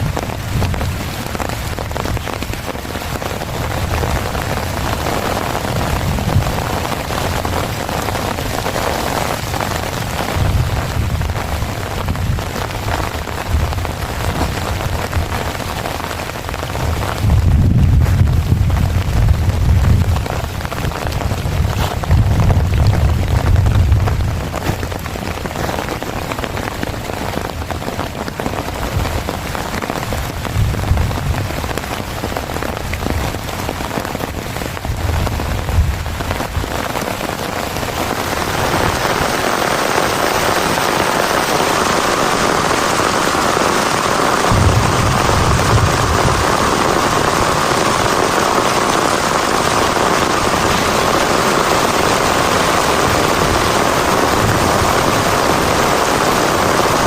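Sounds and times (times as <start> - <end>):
heavy rain falling: 0.0 - 57.0
low rumbles: 9.4 - 26.9, 44.5 - 48.1.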